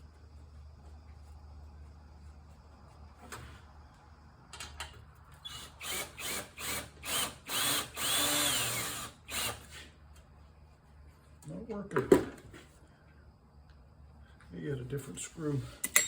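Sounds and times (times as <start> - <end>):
power drill motor whine: 5.4 - 9.9.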